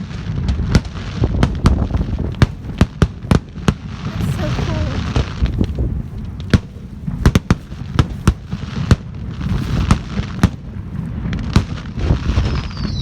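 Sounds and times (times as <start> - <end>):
fireworks bangs and crackles: 0.0 - 13.0
steady low rumble: 1.2 - 12.2.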